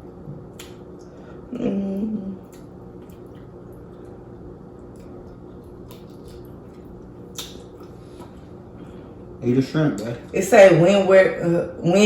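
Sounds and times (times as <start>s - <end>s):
steady low hum: 0.0s - 12.0s
wet chewing and squishes: 2.4s - 9.0s.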